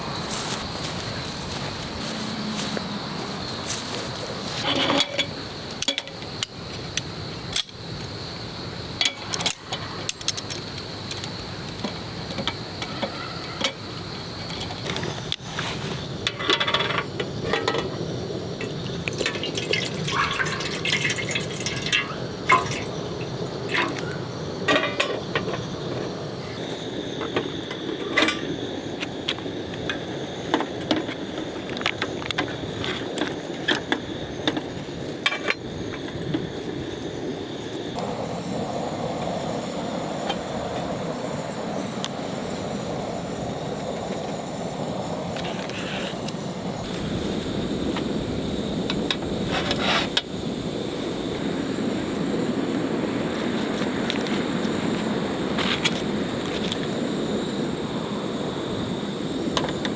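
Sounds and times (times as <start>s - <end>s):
camping gear clinking: 0.2s - 5.3s
water-like noise: 14.9s - 26.1s.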